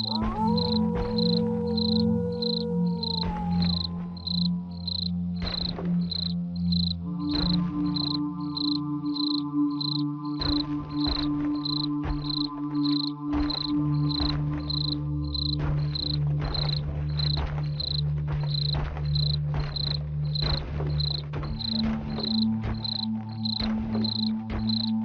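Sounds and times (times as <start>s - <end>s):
low sustained drone: 0.0s - 16.0s
cricket chirping: 0.0s - 25.0s.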